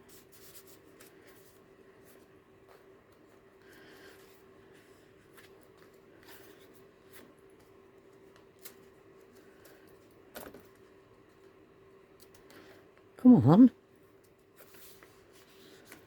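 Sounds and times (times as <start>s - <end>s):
faint steady hum: 0.0s - 16.0s
paper pages rustling: 14.5s - 16.0s.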